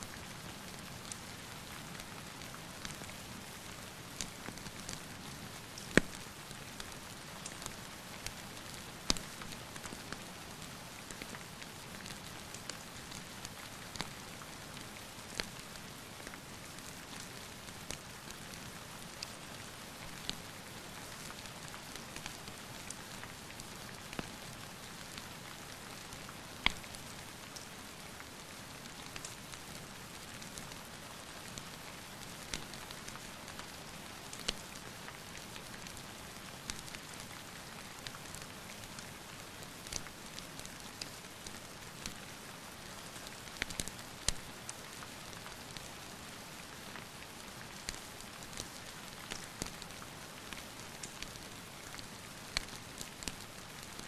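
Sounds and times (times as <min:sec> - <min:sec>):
wood fire crackling: 0:02.2 - 0:10.2, 0:26.6 - 0:27.0, 0:31.4 - 0:42.3, 0:42.9 - 0:45.9, 0:47.6 - 0:54.0.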